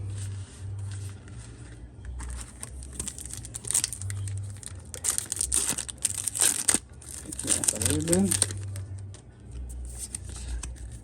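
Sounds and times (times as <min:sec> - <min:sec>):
packaging crinkling and tearing: 0:02.3 - 0:08.9.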